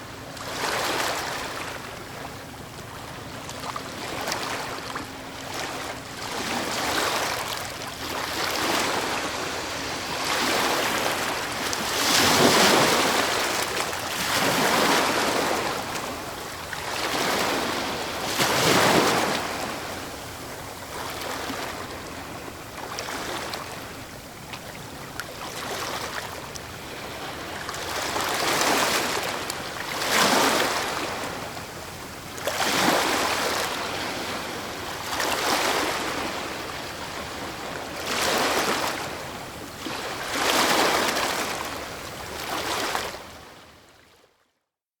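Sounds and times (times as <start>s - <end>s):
ocean waves crashing: 5.6s - 16.3s, 16.9s - 20.1s.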